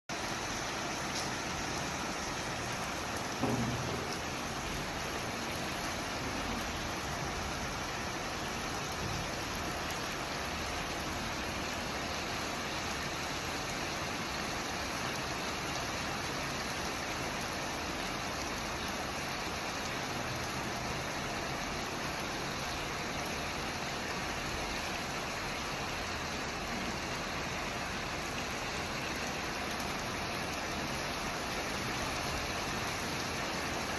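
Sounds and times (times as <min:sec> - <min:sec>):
heavy rain: 0:00.1 - 0:33.9
low thump: 0:03.4 - 0:04.8.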